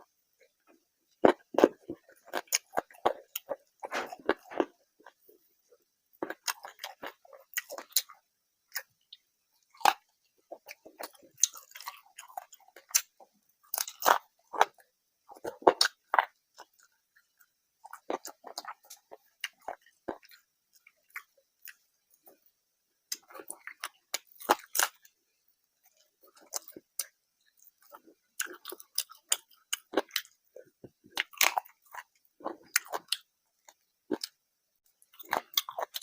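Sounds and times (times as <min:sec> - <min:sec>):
person chewing food: 0:00.0 - 0:22.5, 0:23.1 - 0:25.2, 0:25.8 - 0:36.0
crunchy bites: 0:01.2 - 0:05.2, 0:06.2 - 0:08.9, 0:09.7 - 0:16.9, 0:23.1 - 0:25.1, 0:27.9 - 0:30.4, 0:31.1 - 0:33.3, 0:35.0 - 0:36.0.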